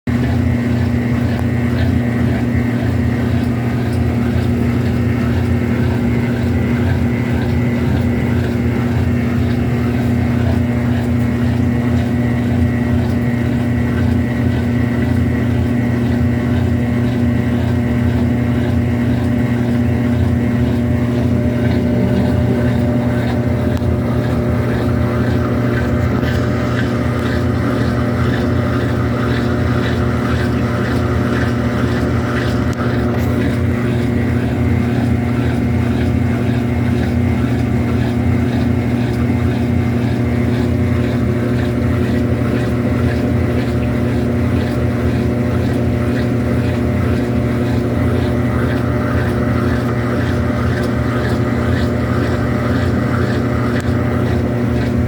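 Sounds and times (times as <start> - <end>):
washing machine spinning: 0.1 - 55.0.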